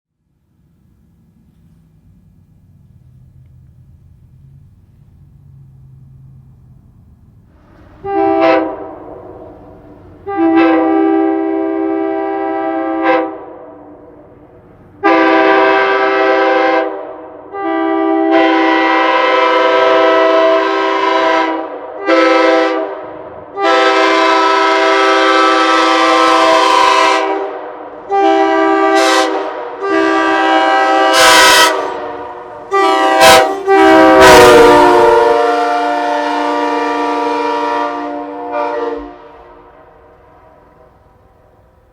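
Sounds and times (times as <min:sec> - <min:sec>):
train horn chord blasts: 0:08.0 - 0:14.3, 0:15.0 - 0:40.5.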